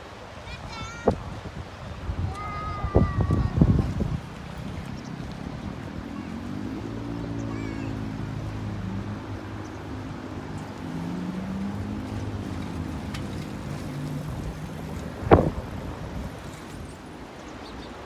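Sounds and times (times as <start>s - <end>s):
engine running: 4.5s - 17.2s.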